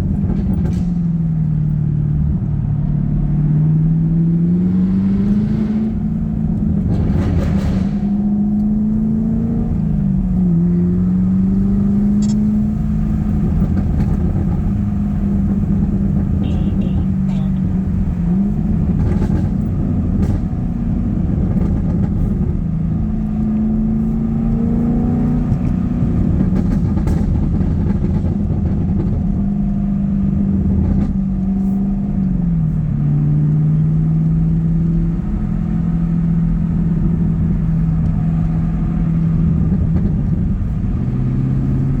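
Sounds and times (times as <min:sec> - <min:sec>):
car engine revving: 0:00.0 - 0:42.0
exhaust crackles and pops: 0:12.1 - 0:24.1, 0:25.3 - 0:29.8.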